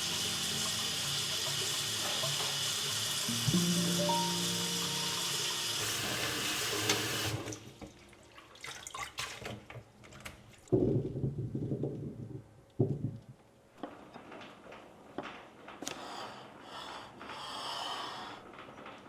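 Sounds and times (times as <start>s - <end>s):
tap water running into sink: 0.0s - 9.8s.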